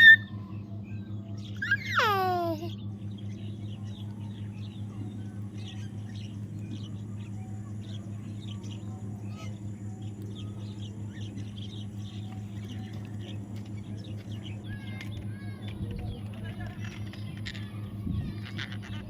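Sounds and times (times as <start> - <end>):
steady low hum: 0.0 - 19.0
baby parrot chirping: 1.6 - 2.7.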